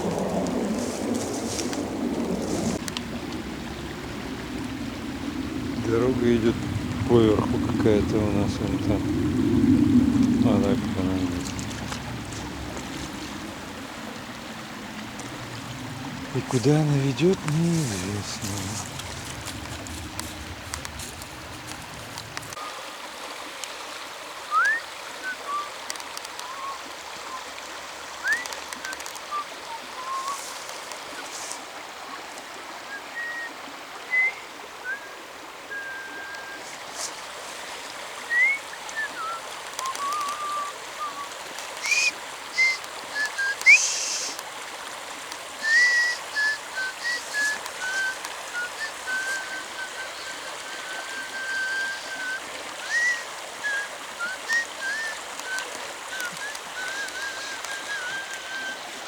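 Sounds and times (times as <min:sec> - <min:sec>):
steady hiss: 0:12.3 - 0:22.8, 0:38.6 - 0:59.0
person whistling a tune: 0:24.5 - 0:25.7, 0:34.1 - 0:35.1, 0:38.3 - 0:41.2, 0:41.8 - 0:44.4, 0:45.6 - 0:58.8.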